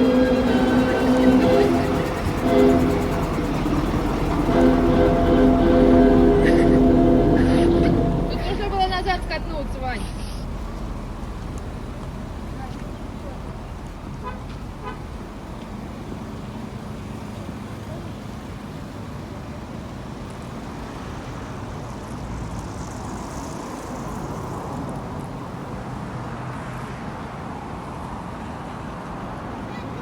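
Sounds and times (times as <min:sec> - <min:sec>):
vehicle engine hum and rumble: 0:00.0 - 0:18.4.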